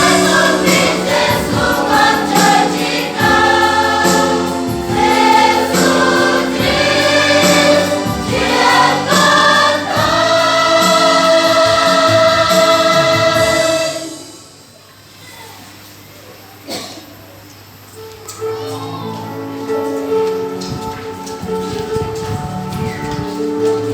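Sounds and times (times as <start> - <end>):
choir singing a hymn: 0.0 - 14.6.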